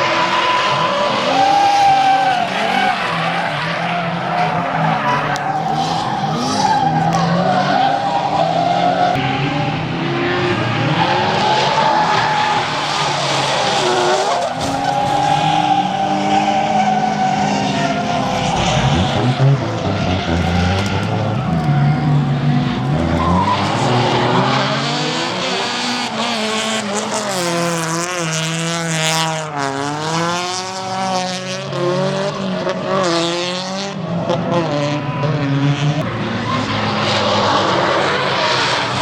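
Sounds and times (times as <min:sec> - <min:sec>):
car engines revving: 0:00.0 - 0:39.0
tyres squealing: 0:11.8 - 0:24.3.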